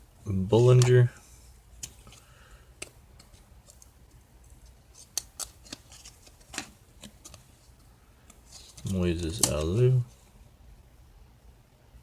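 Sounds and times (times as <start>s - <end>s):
trading cards peeled apart: 4.9s - 7.4s, 8.6s - 9.8s.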